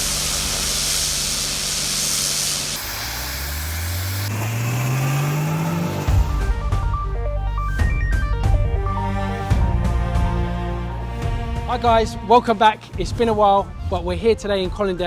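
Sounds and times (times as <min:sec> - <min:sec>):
pressure washer water spray: 0:00.0 - 0:06.5
low hum rising in pitch: 0:00.0 - 0:07.4.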